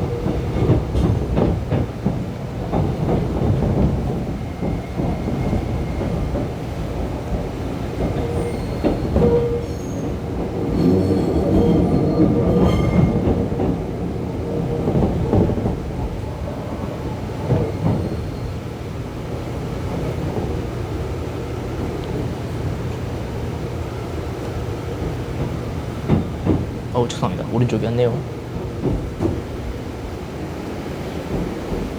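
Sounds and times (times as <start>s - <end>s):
train clunks and knocks: 0.0s - 31.9s
train rumbling along track: 0.0s - 31.9s
wheel or brake squeals: 8.2s - 13.2s.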